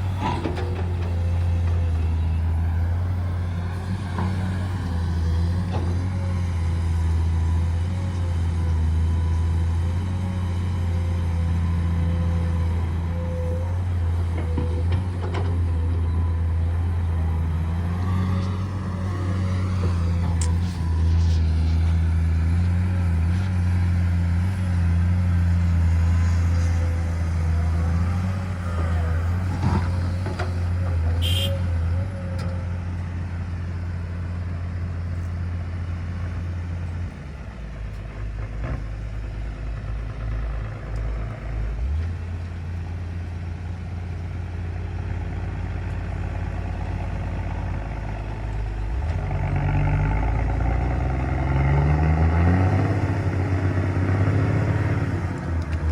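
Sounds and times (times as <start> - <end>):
heavy diesel engine revving: 16.4 - 33.4, 45.2 - 55.9.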